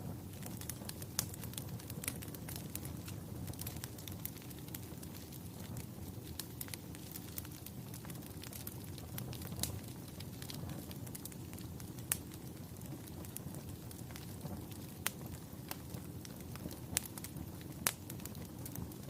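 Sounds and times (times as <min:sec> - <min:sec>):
fire crackling: 0:00.0 - 0:19.0
sharp pops of fire: 0:00.0 - 0:19.0.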